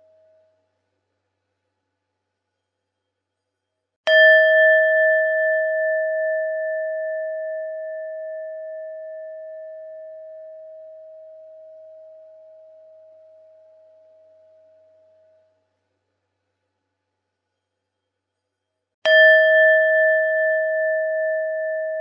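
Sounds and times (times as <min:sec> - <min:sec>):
meditation bell ringing: 0:04.1 - 0:15.4, 0:19.1 - 0:22.0.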